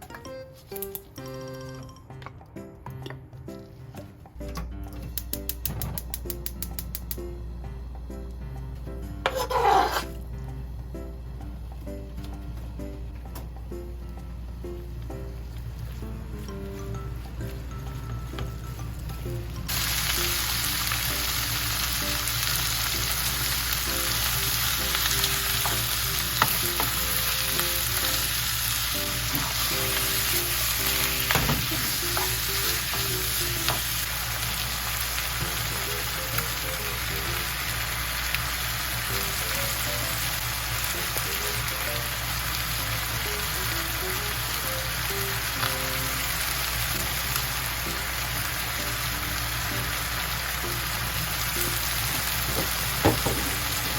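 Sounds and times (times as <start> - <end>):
soft background music: 0.0 - 53.9
food sizzling in a frying pan: 9.3 - 10.1, 15.6 - 53.9.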